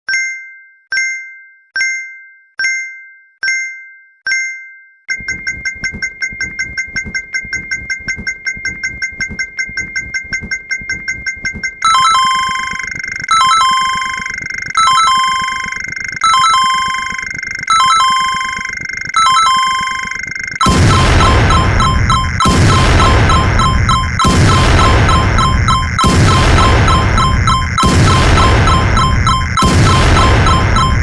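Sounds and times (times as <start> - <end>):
bell-like ding: 0.1 - 31.0
short electronic beeping: 5.1 - 31.0
steady electronic tone: 5.1 - 31.0
loud noisy sound: 11.7 - 31.0.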